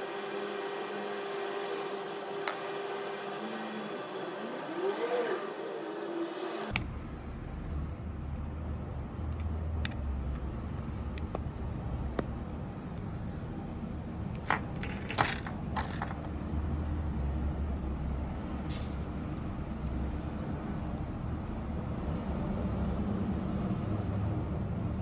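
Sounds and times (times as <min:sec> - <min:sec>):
sharp clicks or rattles: 0:14.4 - 0:16.3.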